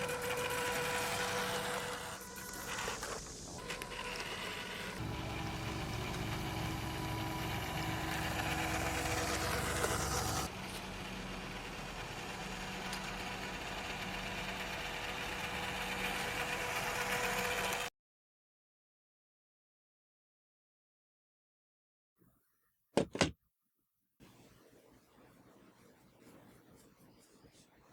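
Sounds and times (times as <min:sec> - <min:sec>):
toy car electric motor and gears: 0:00.0 - 0:17.9.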